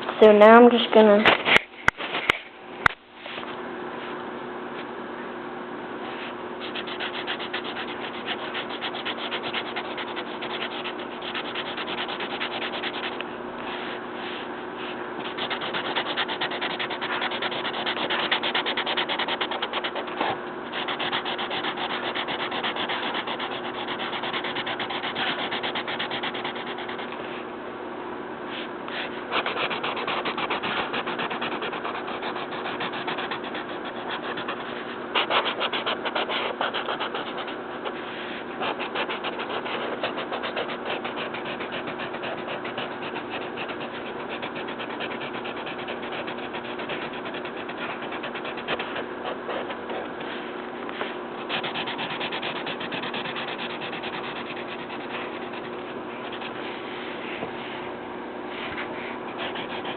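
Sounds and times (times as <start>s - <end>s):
colouring tool scratching paper: 6.6s - 13.2s, 15.2s - 27.2s, 28.9s - 50.4s, 51.0s - 57.4s, 58.6s - 59.9s.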